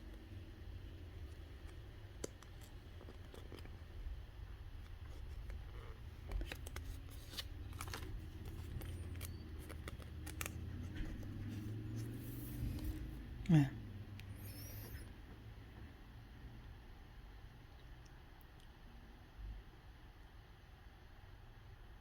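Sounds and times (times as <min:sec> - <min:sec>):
steady low hum: 0:00.0 - 0:22.0
foil pack crinkling and clicking: 0:06.2 - 0:10.6.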